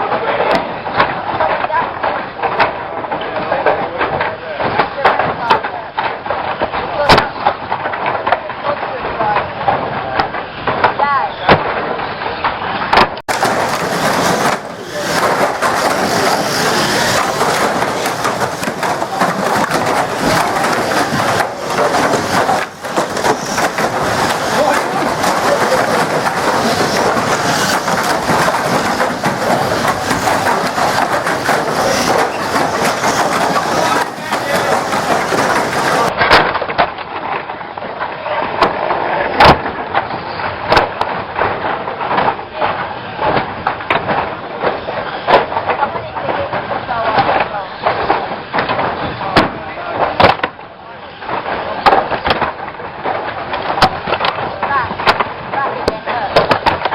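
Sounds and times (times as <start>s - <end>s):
cars crashing into each other: 12.9s - 36.8s
racing car engines and tyres: 13.3s - 36.2s.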